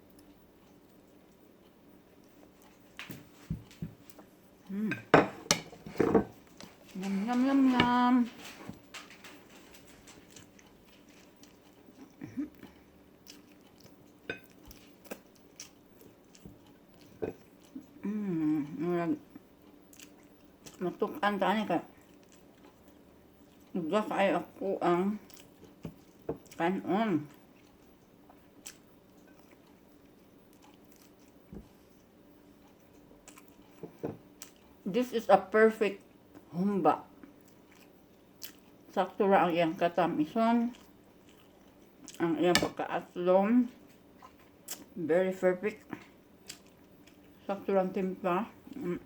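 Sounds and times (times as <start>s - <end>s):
person humming mmm: 4.6s - 5.1s, 17.8s - 19.2s, 48.7s - 49.0s
chewing with mouth smacks: 8.8s - 20.8s, 21.9s - 23.8s, 25.2s - 26.6s, 27.3s - 34.8s, 37.2s - 38.9s, 40.6s - 42.2s, 43.8s - 44.9s, 45.8s - 47.4s.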